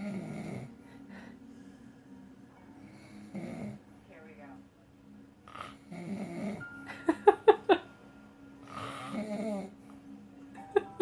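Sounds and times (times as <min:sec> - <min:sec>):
man snoring: 0:00.0 - 0:00.7, 0:05.5 - 0:06.6.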